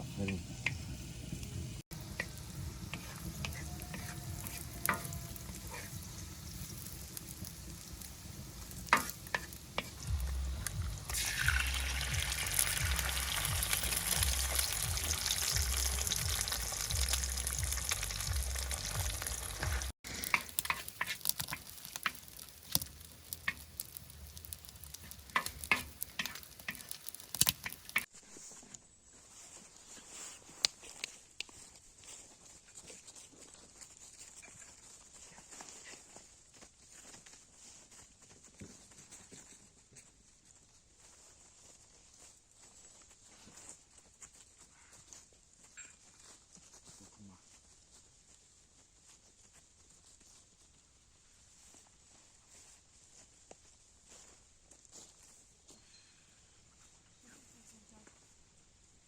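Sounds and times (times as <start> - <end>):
food frying in a pan: 0.0 - 28.1
loud sizzle of food in fat: 0.0 - 28.1
utensil clicking and scraping: 20.1 - 28.1.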